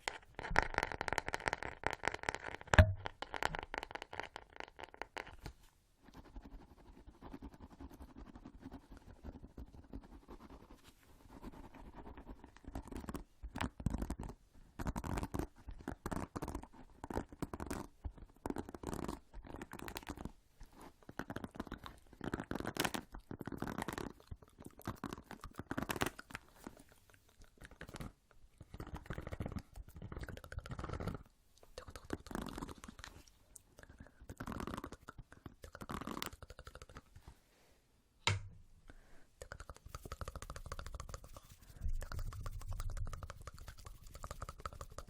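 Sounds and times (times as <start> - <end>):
fast irregular clicks and crackles: 0.0 - 5.4, 21.2 - 33.2, 34.3 - 37.1, 39.4 - 45.0.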